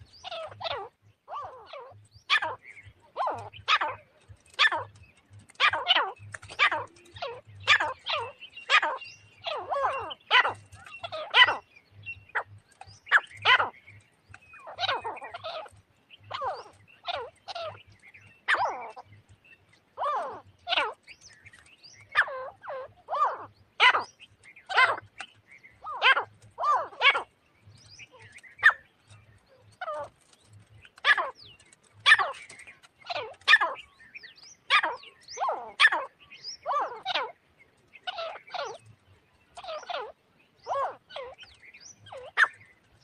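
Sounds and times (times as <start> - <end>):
francolin calling: 0.0 - 30.1.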